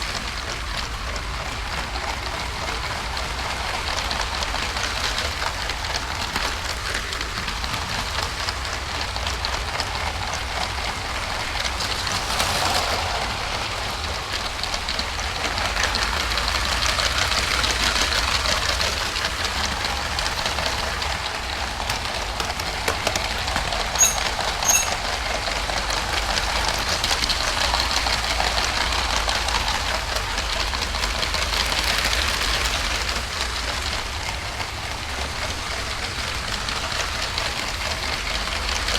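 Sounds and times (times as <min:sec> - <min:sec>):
toy train wheels clattering: 0:13.8 - 0:38.9.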